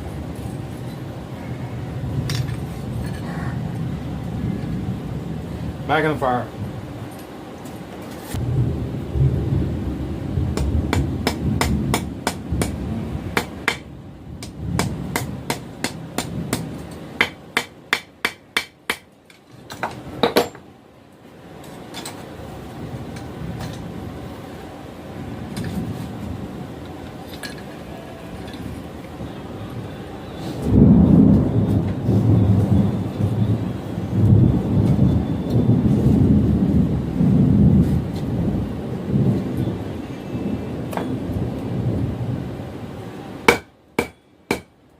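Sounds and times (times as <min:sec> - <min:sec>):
thunder rumbling: 0:00.0 - 0:07.1, 0:08.4 - 0:17.2, 0:22.4 - 0:26.9, 0:27.8 - 0:43.1
hammer striking steel on anvil: 0:13.4 - 0:13.8, 0:14.4 - 0:19.1, 0:43.5 - 0:44.7.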